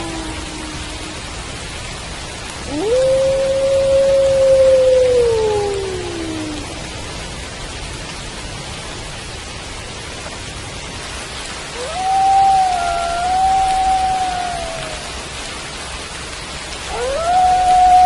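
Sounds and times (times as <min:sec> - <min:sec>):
wolves howling: 0:00.0 - 0:01.2, 0:02.7 - 0:06.8, 0:11.8 - 0:15.2, 0:16.9 - 0:18.0
steady rain: 0:00.0 - 0:18.0.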